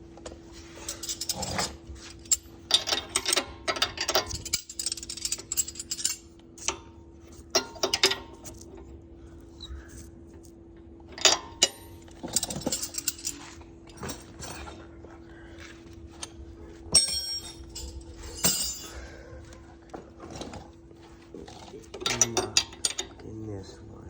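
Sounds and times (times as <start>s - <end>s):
metal hand tools clinking: 16.9s - 19.1s.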